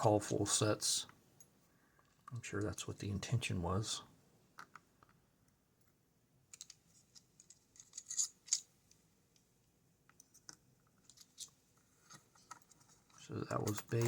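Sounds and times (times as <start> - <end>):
metal lock picks clicking: 6.5 - 8.7.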